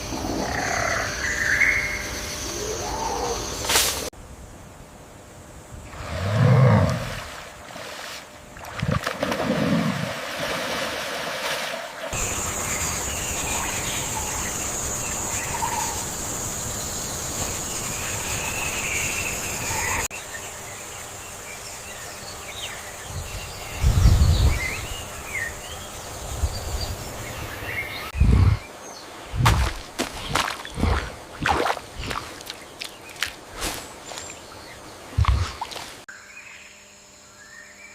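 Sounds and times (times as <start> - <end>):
birds chirping: 12.2 - 36.8.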